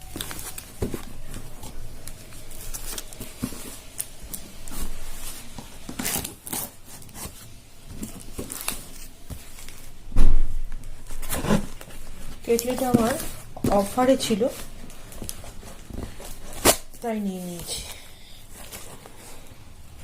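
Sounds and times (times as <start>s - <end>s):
packaging being torn and rubbed: 0.0s - 9.9s
loud thump: 10.1s - 10.6s.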